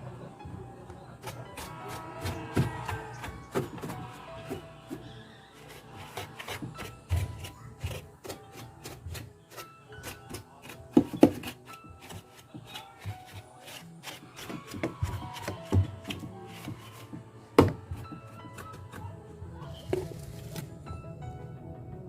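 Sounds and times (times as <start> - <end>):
background music: 0.0 - 22.0.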